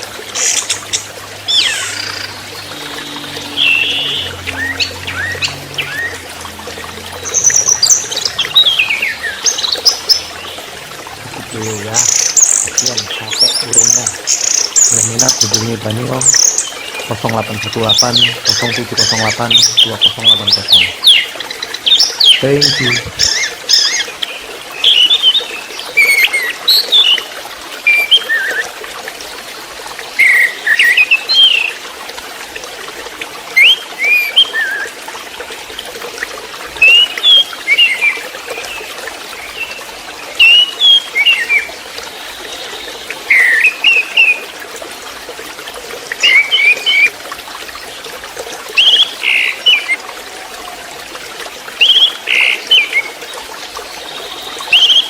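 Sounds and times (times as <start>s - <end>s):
thrush singing whistled phrases: 43.3s - 44.4s.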